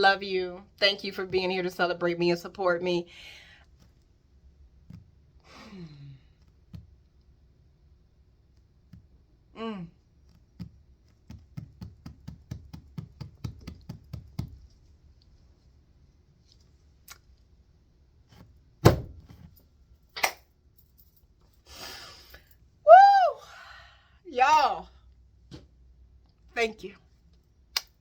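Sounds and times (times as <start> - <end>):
loud thump: 18.8 - 19.2.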